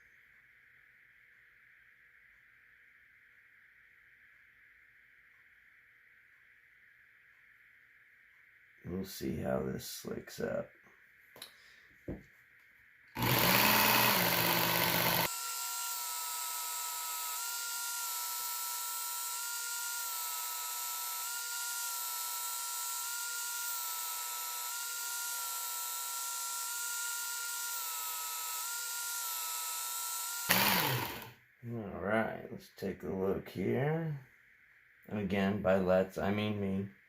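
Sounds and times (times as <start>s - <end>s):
belt sharpener whining: 13.2s - 31.4s.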